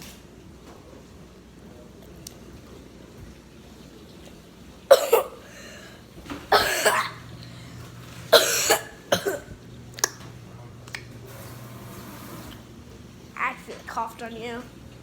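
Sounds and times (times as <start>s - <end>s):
girl coughing: 4.9s - 5.7s, 6.5s - 7.2s, 8.3s - 9.6s.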